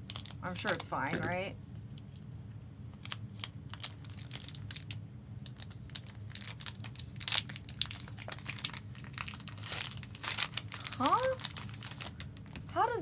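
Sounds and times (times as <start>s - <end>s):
plastic wrapping crinkling: 0.0s - 2.2s, 2.8s - 13.0s
steady low hum: 0.0s - 13.0s.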